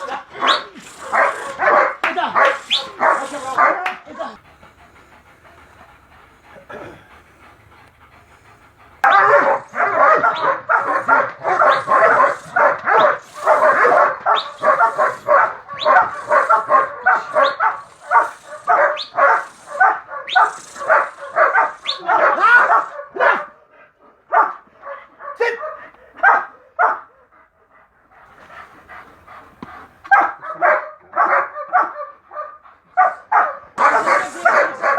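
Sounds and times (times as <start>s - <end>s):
dog barking rapidly: 0.0s - 4.4s, 9.0s - 23.5s, 24.3s - 27.0s, 30.1s - 34.9s.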